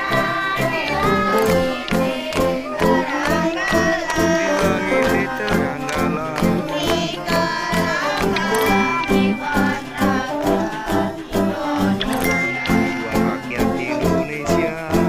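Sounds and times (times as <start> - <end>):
music with steady beat: 0.0 - 15.0
person singing: 0.0 - 15.0.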